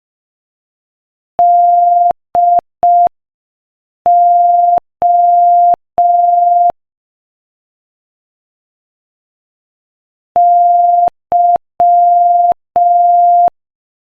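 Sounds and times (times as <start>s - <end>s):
morse code tone: 4.1s - 6.8s, 10.4s - 13.6s.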